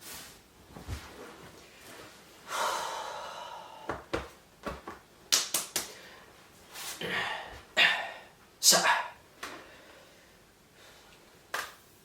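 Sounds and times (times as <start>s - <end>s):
long breath out: 2.5s - 3.9s.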